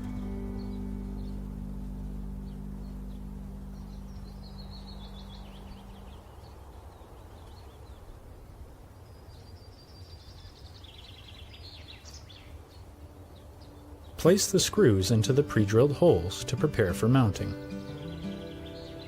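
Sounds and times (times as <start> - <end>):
low steady drone: 0.0 - 6.4
songbirds chirping in trills: 0.0 - 19.0.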